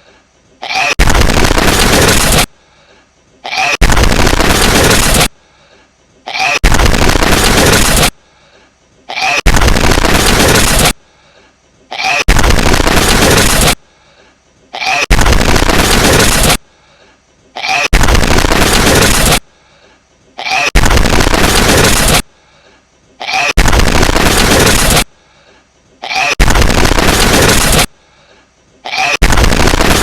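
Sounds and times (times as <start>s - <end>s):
loud distorted blast: 0.8s - 2.5s, 3.8s - 5.3s, 6.4s - 8.1s, 9.2s - 11.0s, 12.2s - 13.8s, 15.0s - 16.6s, 17.9s - 19.4s, 20.6s - 22.2s, 23.6s - 25.1s, 26.2s - 27.9s, 29.1s - 30.0s.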